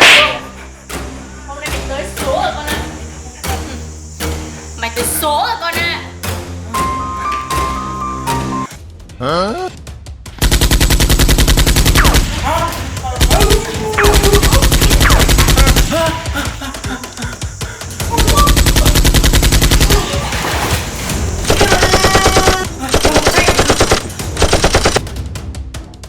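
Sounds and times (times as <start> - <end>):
rapid blaster gunfire: 10.4 - 16.0, 18.2 - 25.0.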